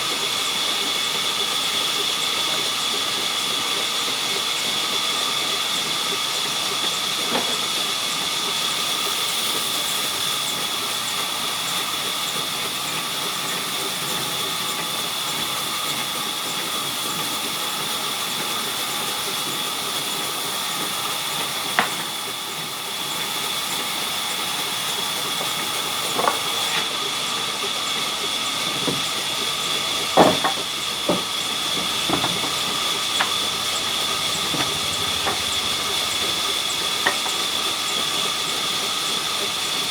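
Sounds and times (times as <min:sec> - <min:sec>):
sawmill saw whining: 0:00.0 - 0:39.9
sharp knocks: 0:30.0 - 0:37.4.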